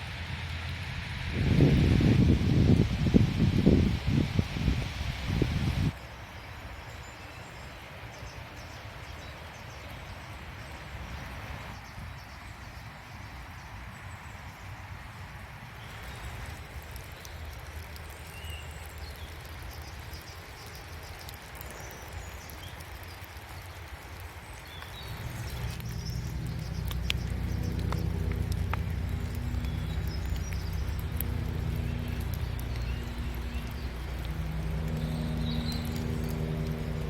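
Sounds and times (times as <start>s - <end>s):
low engine hum: 0.0s - 5.8s, 24.8s - 37.0s
rain dripping and pattering: 0.0s - 37.0s.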